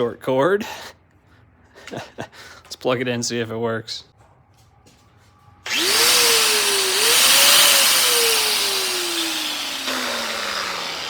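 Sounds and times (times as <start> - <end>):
angle grinder motor whine: 5.7 - 11.0.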